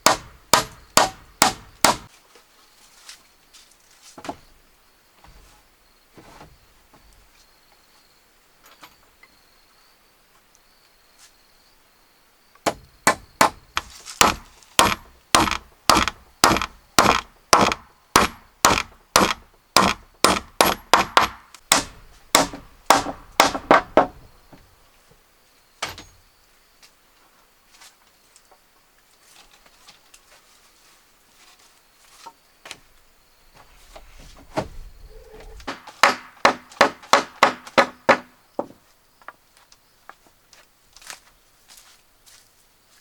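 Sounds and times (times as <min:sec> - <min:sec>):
hammer striking timber: 0:00.0 - 0:02.1, 0:12.6 - 0:24.2, 0:35.6 - 0:38.8.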